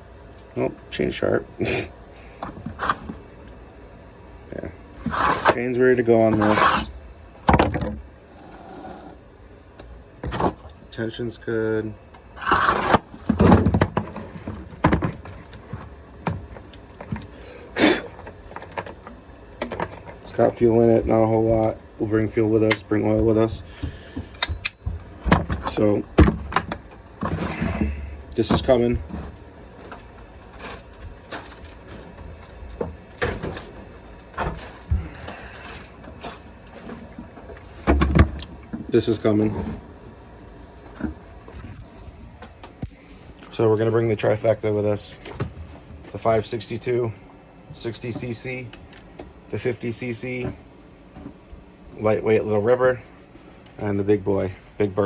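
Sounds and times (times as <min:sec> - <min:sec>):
clunks and knocks of handling: 0:02.4 - 0:03.2, 0:06.3 - 0:08.0, 0:10.2 - 0:10.8, 0:12.4 - 0:17.3, 0:22.7 - 0:38.9
short rushing scrapes: 0:05.0 - 0:05.6, 0:06.3 - 0:07.0
equipment knocks and clunks: 0:07.4 - 0:08.0.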